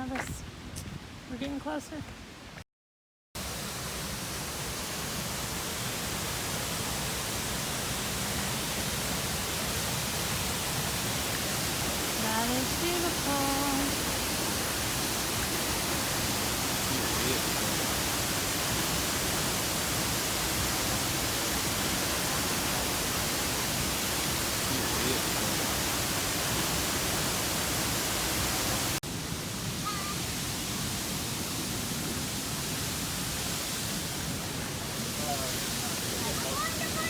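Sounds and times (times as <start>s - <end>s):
waterfall rushing: 3.4s - 37.0s.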